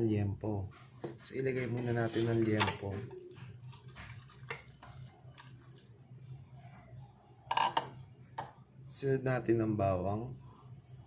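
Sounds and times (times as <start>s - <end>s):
meat handling in a bowl: 1.2s - 6.9s.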